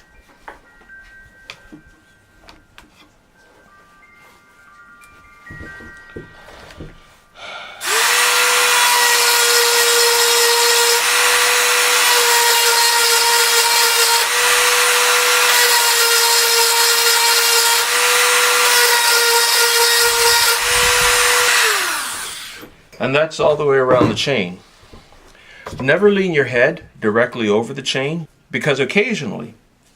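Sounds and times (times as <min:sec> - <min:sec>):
soft handling knocks: 0:00.2 - 0:07.2, 0:23.4 - 0:25.9
rotary tool grinding metal: 0:07.8 - 0:22.8.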